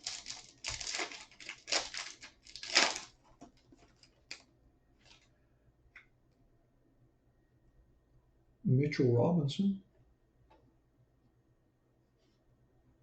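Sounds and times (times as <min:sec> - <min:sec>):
wrapper crinkling: 0:00.0 - 0:05.3.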